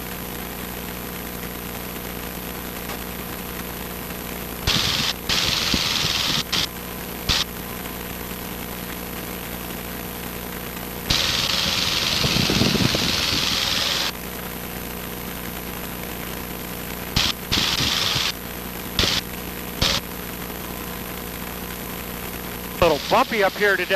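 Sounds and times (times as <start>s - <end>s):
aircraft piston engine running: 4.7s - 6.7s, 11.1s - 14.1s, 17.2s - 18.4s, 19.0s - 19.2s, 19.8s - 20.0s, 22.8s - 23.9s
bursts of hiss: 4.7s - 6.7s, 7.3s - 7.5s, 11.1s - 14.1s, 17.2s - 18.4s, 19.0s - 20.1s, 22.8s - 23.9s.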